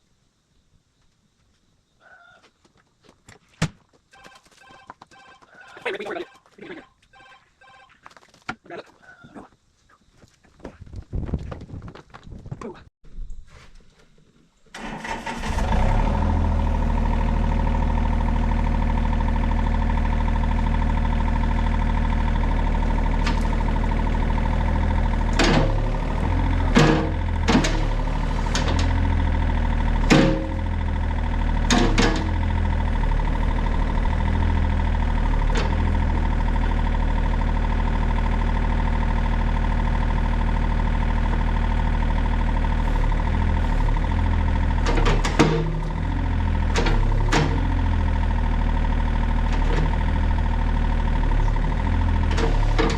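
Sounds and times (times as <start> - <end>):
excavator engine running: 14.7 - 52.9
sharp metal clunks and knocks: 25.3 - 25.8, 26.7 - 29.0, 30.0 - 30.6, 31.6 - 32.5, 44.8 - 46.0, 46.7 - 47.8.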